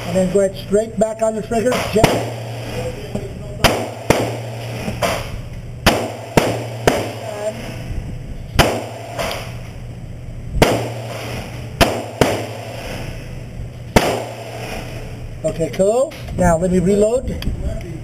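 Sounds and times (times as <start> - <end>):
steady low hum: 0.0 - 18.0
gunshots indoors: 1.8 - 2.8, 3.6 - 7.5, 8.5 - 9.7, 10.6 - 13.3, 13.9 - 15.1.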